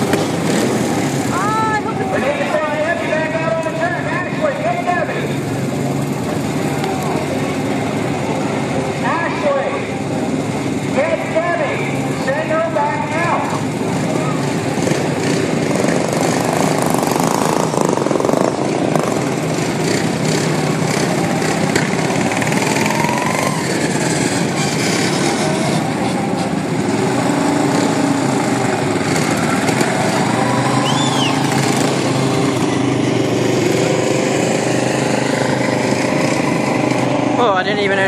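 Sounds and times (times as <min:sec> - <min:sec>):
racing lawn mower engines: 0:00.0 - 0:38.0.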